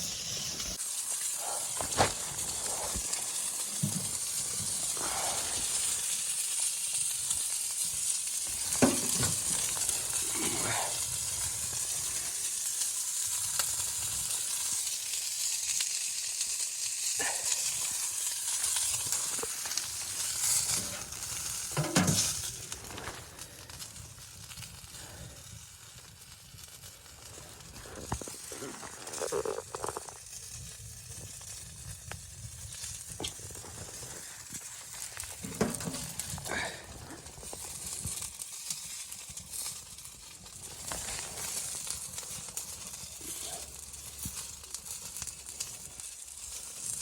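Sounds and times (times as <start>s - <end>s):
food sizzling in a pan: 0.0s - 47.0s
utensil scraping and knocking: 21.8s - 22.3s.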